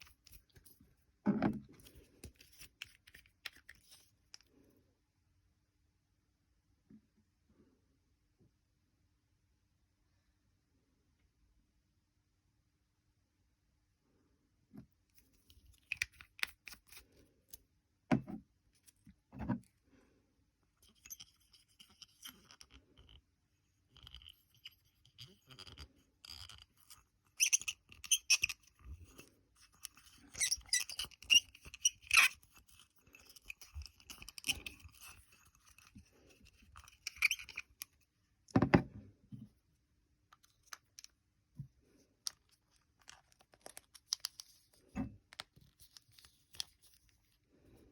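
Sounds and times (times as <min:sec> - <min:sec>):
small objects clicking and crinkling: 0:23.9 - 0:38.0, 0:42.2 - 0:47.2.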